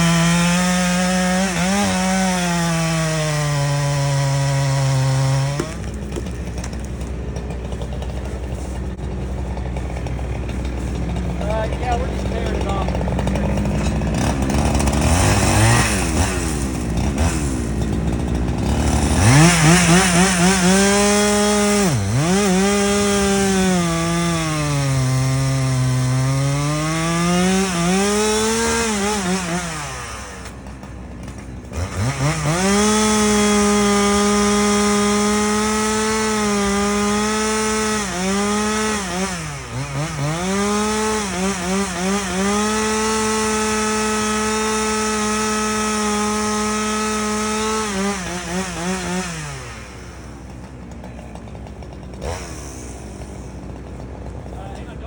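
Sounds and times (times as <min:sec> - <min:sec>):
chainsaw cutting wood: 0:00.0 - 0:55.0
low steady engine sound: 0:05.8 - 0:15.0.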